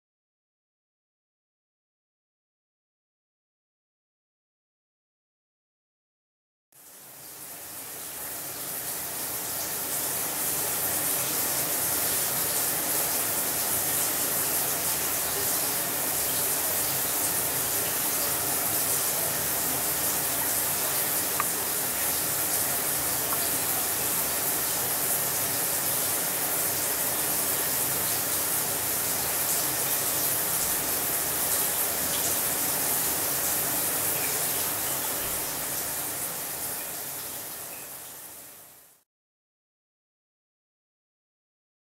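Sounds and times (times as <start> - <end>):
shower head spraying water: 20.5 - 26.8.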